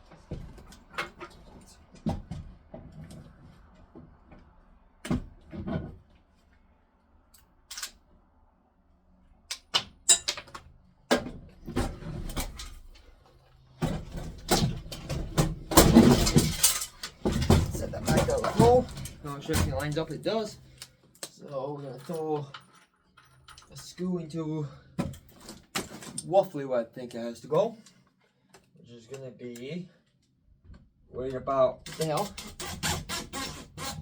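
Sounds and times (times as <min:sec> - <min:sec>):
hardware and tools clattering: 0:13.9 - 0:24.0, 0:25.0 - 0:26.3, 0:31.9 - 0:34.0.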